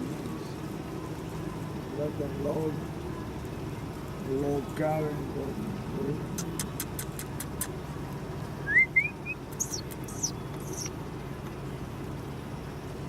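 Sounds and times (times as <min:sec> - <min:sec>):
bird chirping: 0:08.6 - 0:10.9.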